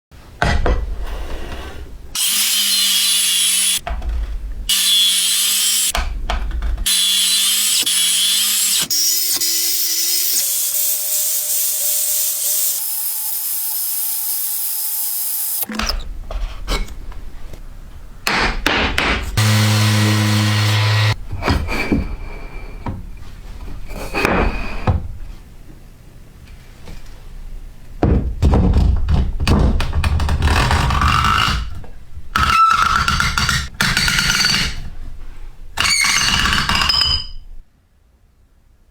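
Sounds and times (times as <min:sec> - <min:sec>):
power tools cutting: 0:02.2 - 0:03.8, 0:04.7 - 0:05.9, 0:06.9 - 0:15.7, 0:19.4 - 0:21.2.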